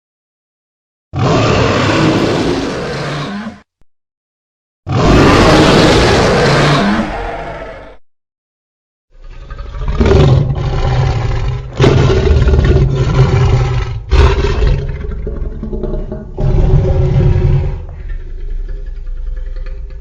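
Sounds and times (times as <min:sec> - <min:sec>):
deep growling creature roars: 0:01.2 - 0:03.6, 0:04.9 - 0:08.0, 0:09.1 - 0:20.0.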